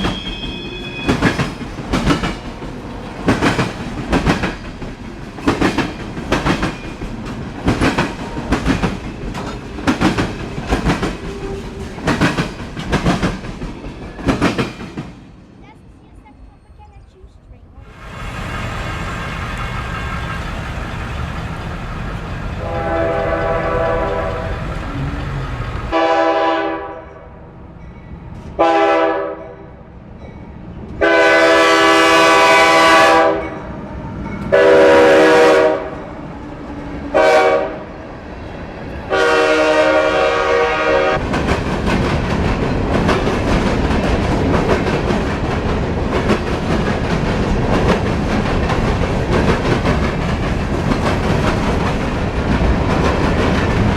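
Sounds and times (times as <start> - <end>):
train wheels clattering on rail: 0.0 - 15.3, 18.4 - 26.2, 41.1 - 53.9
locomotive air horn blasts: 22.6 - 24.6, 25.9 - 27.2, 28.6 - 29.5, 31.0 - 33.6, 34.5 - 36.0, 37.1 - 37.9, 39.1 - 41.2.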